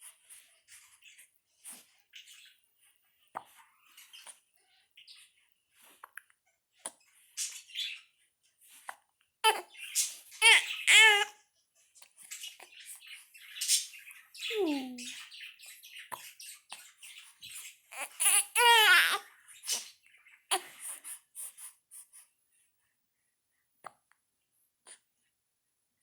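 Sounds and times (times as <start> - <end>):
baby whining: 10.4 - 11.3, 17.9 - 19.2
baby squealing: 17.9 - 19.2.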